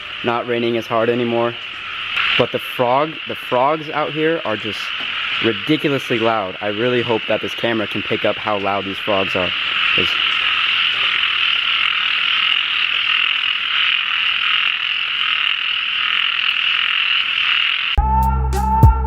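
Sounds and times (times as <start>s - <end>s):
chorus of frogs calling: 0.0s - 18.0s
music: 18.0s - 19.0s.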